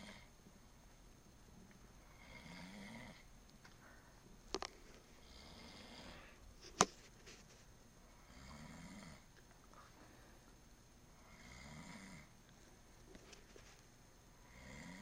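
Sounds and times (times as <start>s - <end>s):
person snoring: 2.1s - 3.2s, 5.2s - 6.4s, 8.2s - 9.3s, 11.2s - 12.3s, 14.4s - 15.0s.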